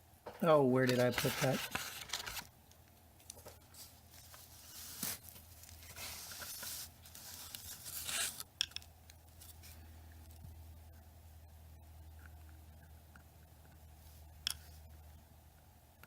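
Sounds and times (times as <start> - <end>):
small objects rustling and scraping: 3.2 - 10.4.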